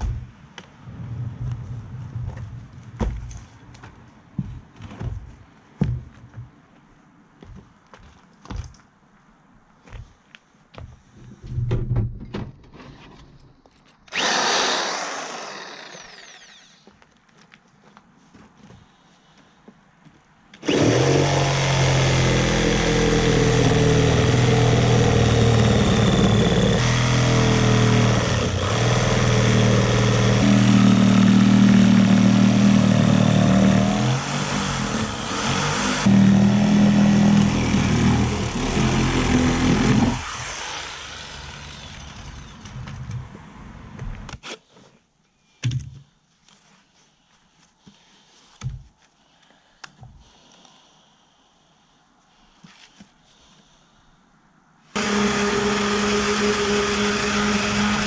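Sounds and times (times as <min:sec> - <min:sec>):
electric power tool running: 0:14.1 - 0:16.8, 0:20.6 - 0:42.5, 0:55.0 - 0:58.0.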